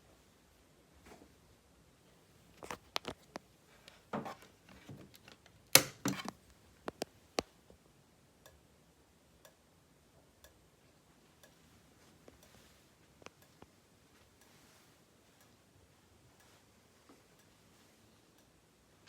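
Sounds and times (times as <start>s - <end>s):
irregular clicks and knocks: 4.2s - 7.5s.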